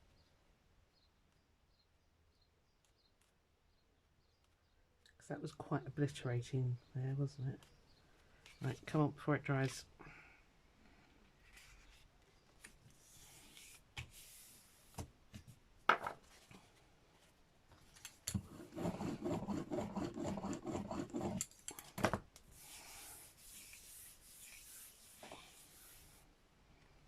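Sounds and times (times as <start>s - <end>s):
rubbing on paper: 22.6s - 26.2s.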